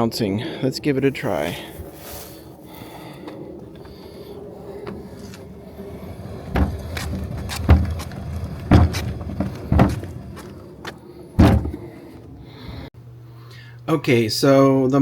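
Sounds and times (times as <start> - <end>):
trash can rolling rumble: 3.6 - 12.9
trash can thumps: 6.4 - 10.5, 11.4 - 11.9.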